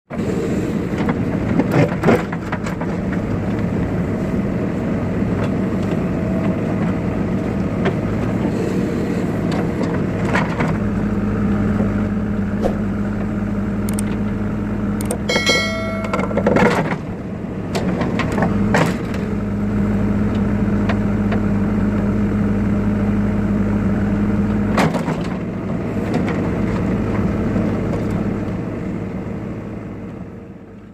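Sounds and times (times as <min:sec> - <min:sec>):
diesel engine running: 0:00.1 - 0:30.9
short high-pitched tone: 0:15.3 - 0:16.7
sharp knocks: 0:15.3 - 0:17.0.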